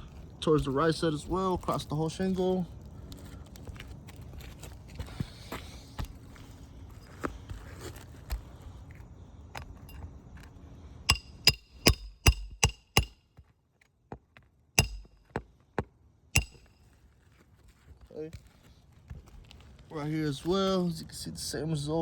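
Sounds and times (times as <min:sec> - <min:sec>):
hammer blows on metal: 0:11.1 - 0:13.2, 0:14.8 - 0:15.2, 0:16.4 - 0:16.7.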